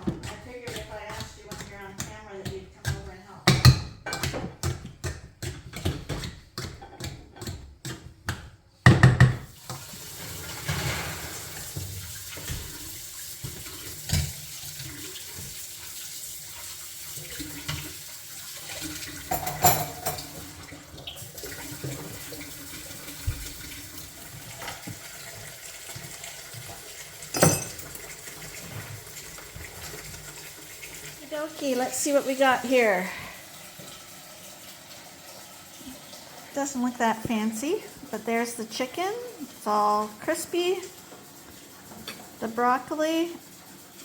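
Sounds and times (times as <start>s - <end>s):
water running from tap: 0.0s - 44.0s
dishes clinking: 19.2s - 20.5s, 27.3s - 28.2s.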